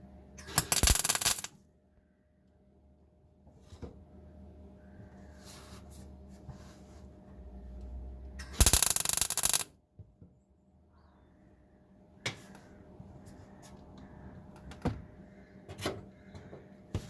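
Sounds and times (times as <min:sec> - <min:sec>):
welder crackling buzz: 0:00.5 - 0:01.5, 0:08.6 - 0:09.7
faint rubbing and handling: 0:05.0 - 0:07.7.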